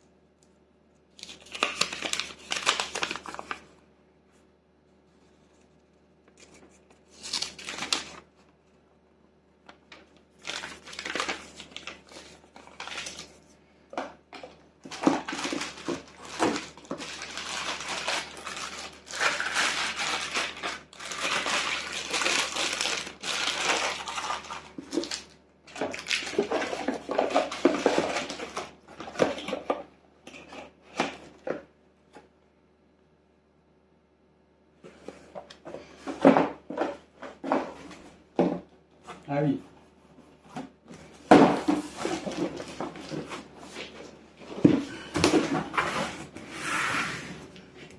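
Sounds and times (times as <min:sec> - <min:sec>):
packaging rustling and crinkling: 0:01.2 - 0:03.7, 0:06.4 - 0:08.4, 0:09.7 - 0:31.4, 0:40.4 - 0:46.5.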